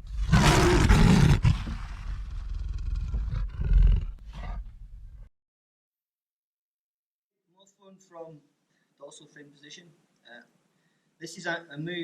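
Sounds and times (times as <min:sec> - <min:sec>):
loud rough roar: 0:00.0 - 0:04.2.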